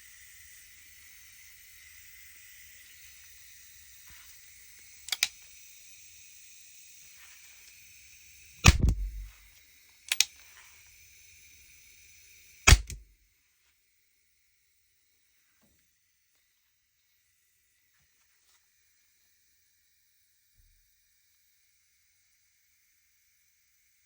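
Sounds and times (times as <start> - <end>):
gunshot crack: 8.6 - 9.4, 12.7 - 13.0
revolver hammer cocking click: 8.6 - 9.4, 12.7 - 13.0.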